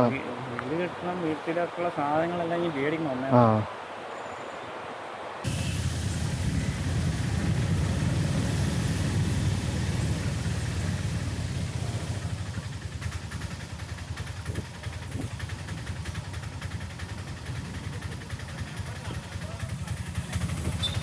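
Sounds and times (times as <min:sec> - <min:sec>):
vehicle engine rumbling: 0:05.4 - 0:21.0.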